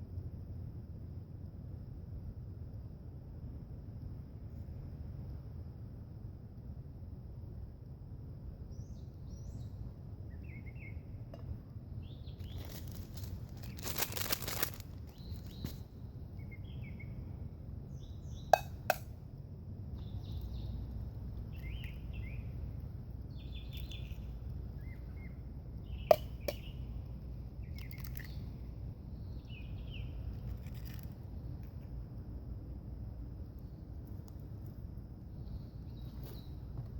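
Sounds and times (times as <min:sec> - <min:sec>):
low outdoor background noise: 0:00.0 - 0:36.9
small birds chirping: 0:08.6 - 0:19.1, 0:19.9 - 0:31.9, 0:33.4 - 0:36.9
short rustle: 0:12.4 - 0:15.8.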